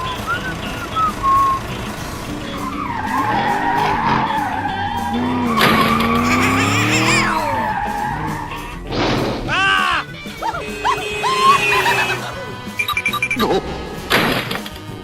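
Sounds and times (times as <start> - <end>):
vehicle engine revving and whining: 0.0 - 6.2
background music: 0.0 - 15.0
tyre skid screech: 2.6 - 10.0.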